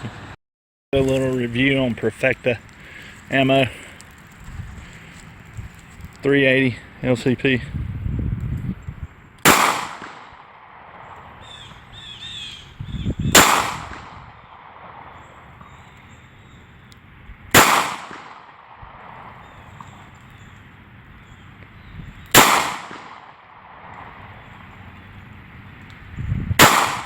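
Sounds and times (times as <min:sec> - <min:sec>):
pistol shots: 0:09.4 - 0:11.7, 0:13.3 - 0:15.8, 0:17.5 - 0:20.0, 0:22.3 - 0:24.2, 0:26.6 - 0:27.0.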